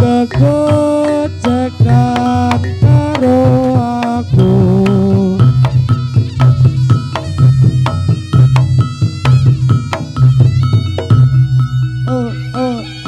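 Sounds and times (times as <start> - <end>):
heavy pulsing bass line: 0.0 - 13.0
quick hand-drum pattern: 0.0 - 13.0
ringing melodic notes: 0.0 - 13.0.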